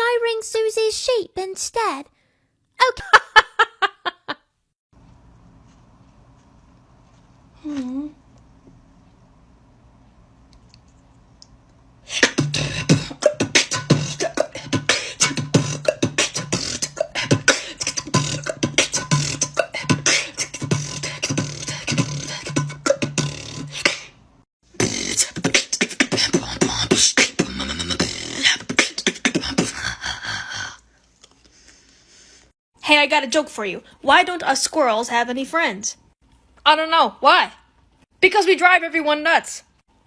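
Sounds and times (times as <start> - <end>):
beatboxing: 12.0 - 30.0.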